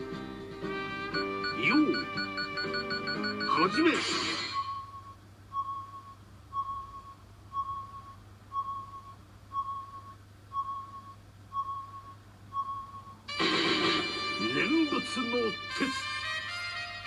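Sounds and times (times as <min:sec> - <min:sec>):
short electronic beeps: 0:01.2 - 0:13.2.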